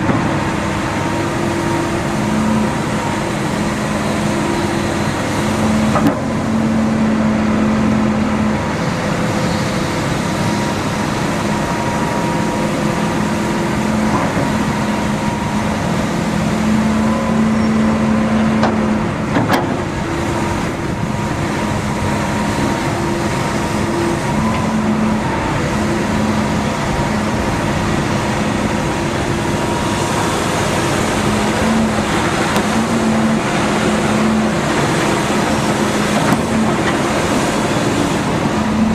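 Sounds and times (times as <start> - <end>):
diesel engine running: 0.0 - 38.9
humming tone: 11.2 - 18.9.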